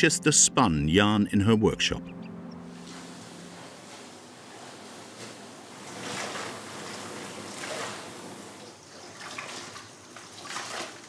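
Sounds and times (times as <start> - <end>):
water splashing and trickling: 2.7 - 11.0.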